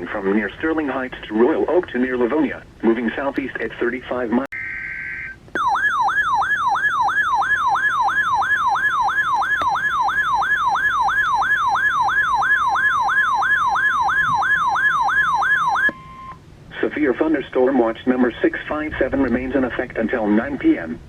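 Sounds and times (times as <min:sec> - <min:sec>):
electronic siren-like sweep: 0:04.6 - 0:16.4.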